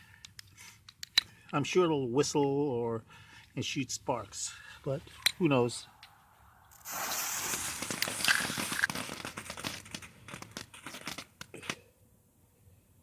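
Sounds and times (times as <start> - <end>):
firework hissing and crackling: 6.7 - 11.8.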